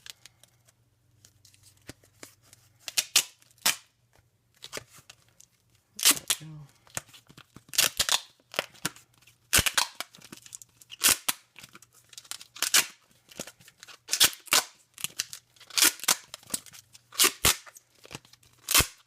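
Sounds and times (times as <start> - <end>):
duct tape ripping: 2.8 - 3.9, 6.0 - 6.6, 7.6 - 8.9, 9.5 - 13.0, 13.8 - 19.0.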